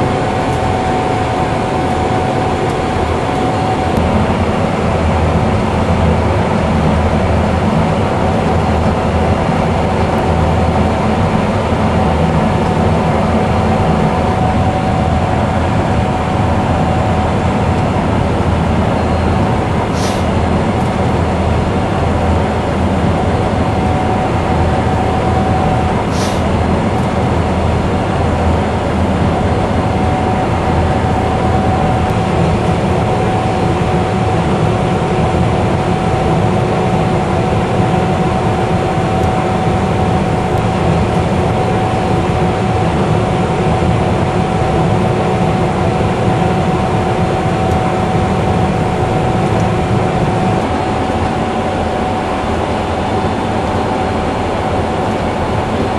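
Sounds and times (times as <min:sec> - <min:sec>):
combine harvester drone: 0:00.0 - 0:55.9
high-pitched whine: 0:00.0 - 0:55.9.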